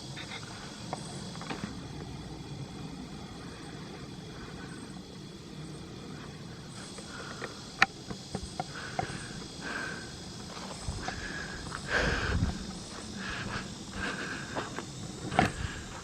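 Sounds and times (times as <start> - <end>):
insects droning: 0.0 - 16.0
footsteps on a trail: 6.9 - 16.0.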